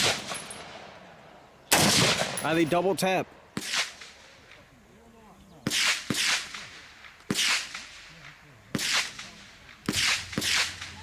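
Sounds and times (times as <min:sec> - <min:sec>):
gunshots: 0:00.0 - 0:00.9, 0:01.7 - 0:02.6, 0:03.6 - 0:04.2, 0:05.6 - 0:11.0.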